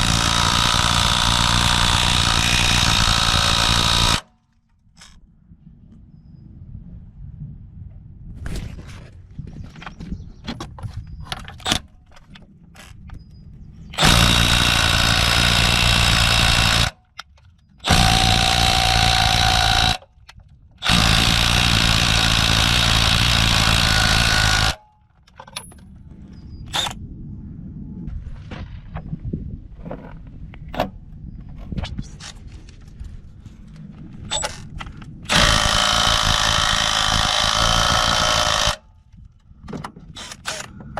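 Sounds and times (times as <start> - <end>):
impact wrench hammering: 0.0 - 4.3, 14.0 - 17.0, 17.8 - 20.0, 20.8 - 24.8, 35.3 - 38.8
tool handling clicks and knocks: 9.7 - 13.3, 16.8 - 21.4, 24.6 - 26.0, 34.2 - 40.9.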